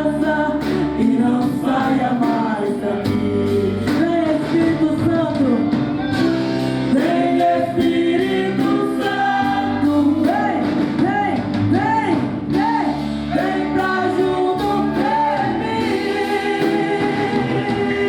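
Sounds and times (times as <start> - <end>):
band accompaniment: 0.0 - 18.0
singers with vibrato: 6.9 - 18.0.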